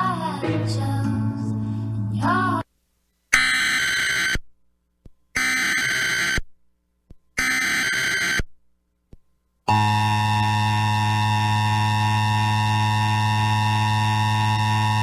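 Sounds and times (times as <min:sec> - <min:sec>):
steady electronic attention tone: 0:09.7 - 0:15.0.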